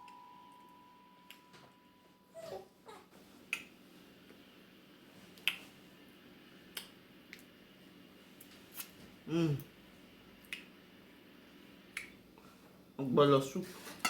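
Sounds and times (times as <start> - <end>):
wet mouth clicks and smacks: 5.4 - 5.6, 10.4 - 10.7, 12.0 - 12.2.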